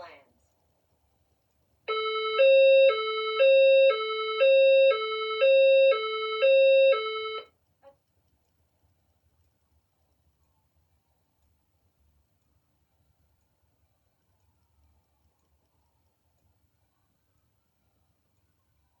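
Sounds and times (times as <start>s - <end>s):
fire alarm hi-lo tone: 1.9s - 7.5s.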